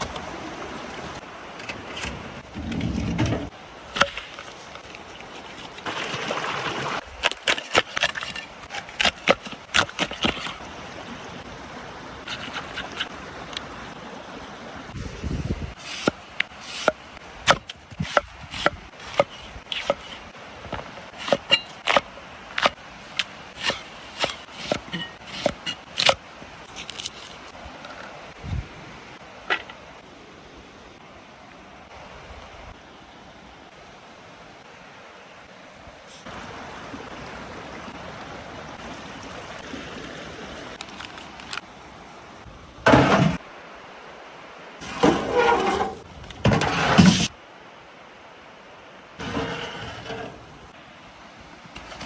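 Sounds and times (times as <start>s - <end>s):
wood scraping: 1.5s - 6.0s, 15.8s - 27.5s, 42.9s - 43.4s, 44.8s - 47.3s, 49.2s - 50.8s.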